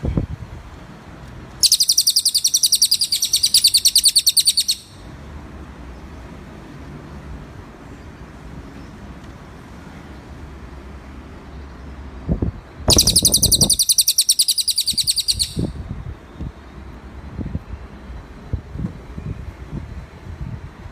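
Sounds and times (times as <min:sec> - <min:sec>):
songbird high trill: 0:01.6 - 0:05.0, 0:12.9 - 0:15.8.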